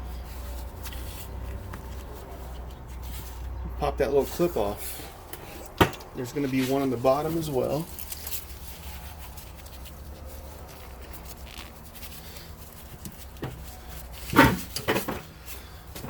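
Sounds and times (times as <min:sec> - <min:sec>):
metal parts rubbing: 0:06.2 - 0:14.9.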